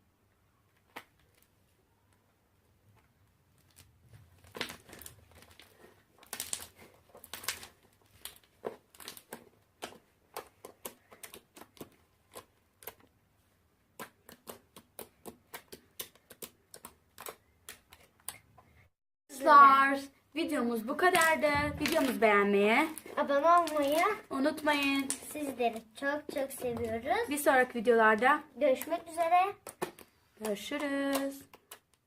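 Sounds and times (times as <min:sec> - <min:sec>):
slime crackling and popping: 0:03.5 - 0:13.1, 0:13.9 - 0:18.4, 0:21.0 - 0:27.5.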